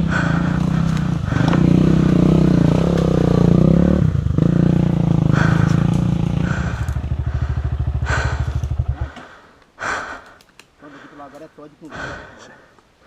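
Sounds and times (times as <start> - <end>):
motorcycle engine revving and idling: 0.0 - 9.4.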